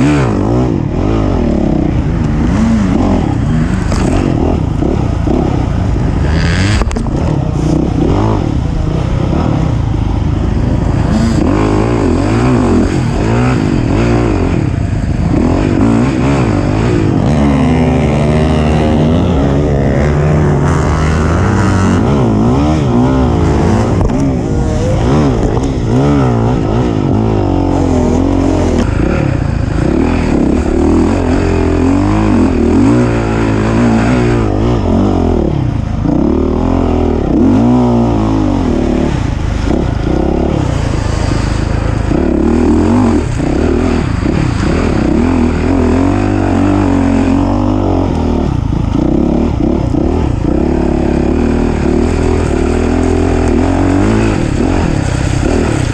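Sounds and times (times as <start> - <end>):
racing engine revving: 0.0 - 55.9.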